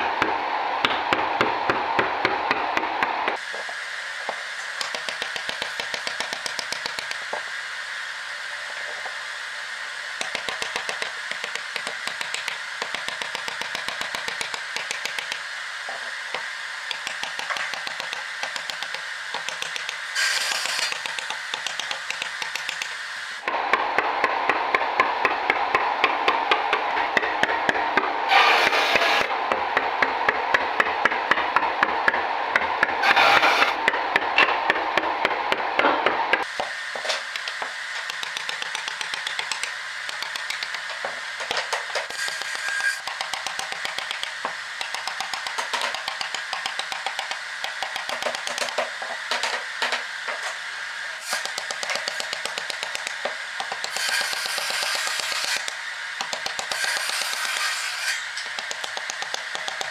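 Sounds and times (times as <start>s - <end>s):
mallet striking chisel into wood: 0.2s - 3.1s, 42.1s - 48.9s, 51.3s - 57.6s, 58.5s - 59.9s.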